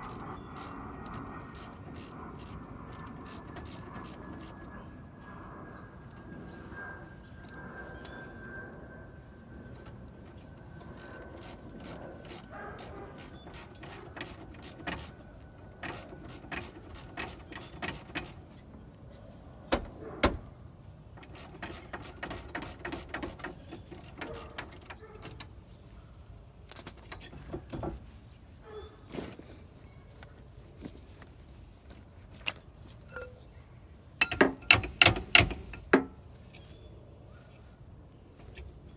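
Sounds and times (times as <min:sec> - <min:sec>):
metal hand tools clicking and clanking: 0:00.0 - 0:04.6, 0:10.3 - 0:18.4, 0:21.2 - 0:25.4, 0:33.0 - 0:36.2.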